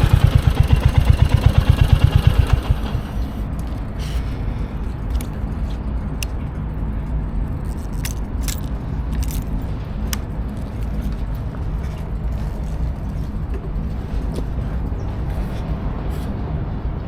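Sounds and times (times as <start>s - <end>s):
motorcycle engine running: 0.0s - 3.8s.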